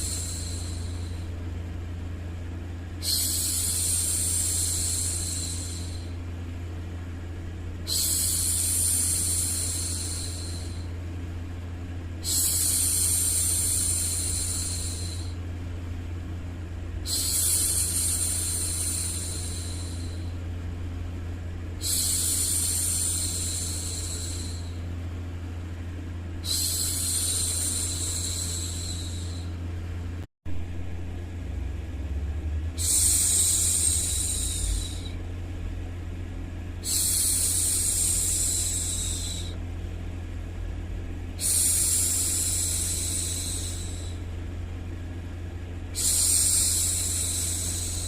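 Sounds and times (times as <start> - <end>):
low white-noise hum: 0.0 - 48.0
woman shushing: 32.8 - 35.2, 41.4 - 44.2.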